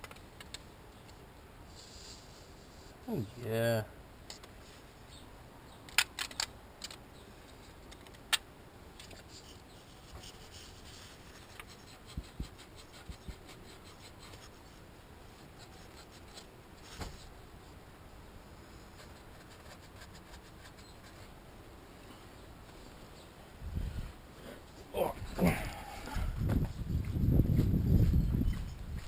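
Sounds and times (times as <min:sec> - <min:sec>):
soft low thumps: 0:25.2 - 0:29.0.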